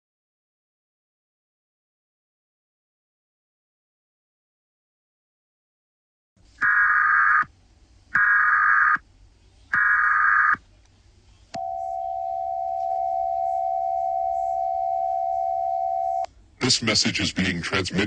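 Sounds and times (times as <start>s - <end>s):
steady attention tone: 6.6s - 7.5s, 8.2s - 9.0s, 9.7s - 10.6s, 11.6s - 16.3s
warbling data tone bursts: 6.6s - 7.5s, 8.2s - 9.0s, 9.8s - 10.6s.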